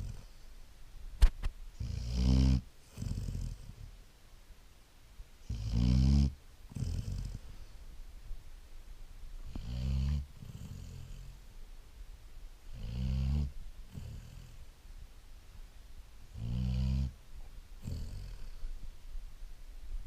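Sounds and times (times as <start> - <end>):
puppy snoring: 0.0 - 0.4, 1.8 - 4.0, 5.4 - 7.7, 9.4 - 11.4, 12.7 - 14.6, 16.3 - 17.2, 17.8 - 18.7
soft breathing: 6.7 - 8.1.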